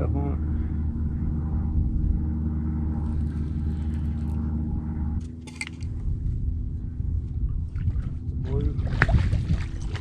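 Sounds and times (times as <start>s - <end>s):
boat motor humming: 0.0s - 10.0s.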